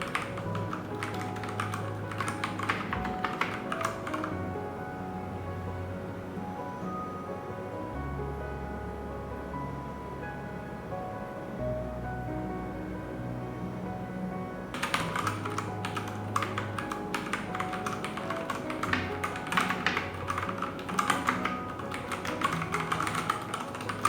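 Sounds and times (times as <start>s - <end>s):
background music: 0.0s - 24.0s
mechanical keyboard key clacks: 14.8s - 24.0s.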